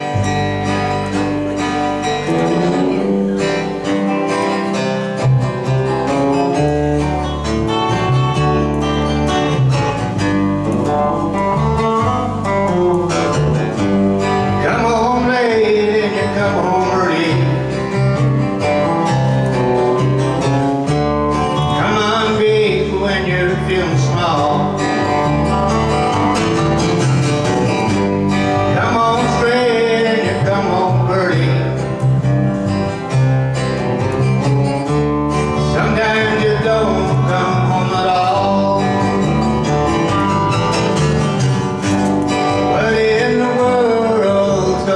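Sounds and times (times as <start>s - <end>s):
wavering lead melody: 0.0s - 14.7s
acoustic country guitar music: 0.0s - 44.9s
steady bass: 0.0s - 44.9s.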